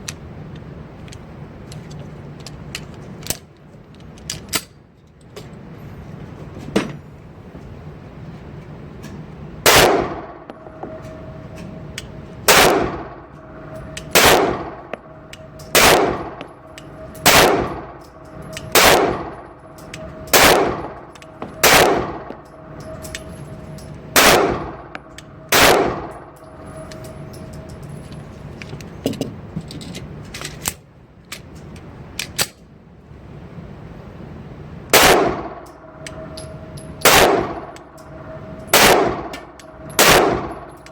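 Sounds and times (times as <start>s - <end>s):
pistol shots: 9.6s - 10.5s, 12.5s - 13.2s, 14.1s - 15.0s, 15.7s - 16.4s, 17.2s - 17.9s, 18.7s - 19.4s, 20.3s - 21.0s, 21.6s - 22.4s, 24.2s - 24.8s, 25.5s - 26.3s, 34.9s - 35.6s, 37.0s - 37.8s, 38.7s - 39.3s, 40.0s - 40.7s.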